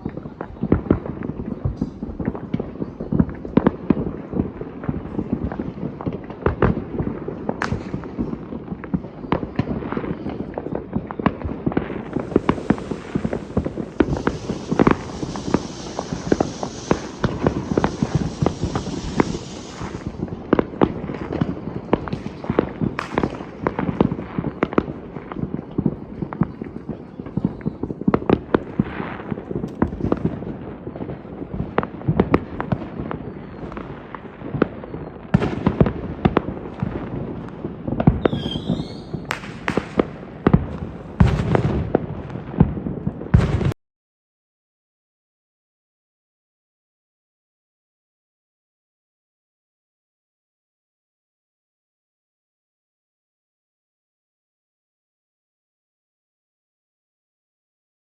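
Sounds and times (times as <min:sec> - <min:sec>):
fireworks bangs and crackles: 0:00.0 - 0:43.8
fireworks hissing: 0:11.9 - 0:24.1, 0:38.2 - 0:42.0.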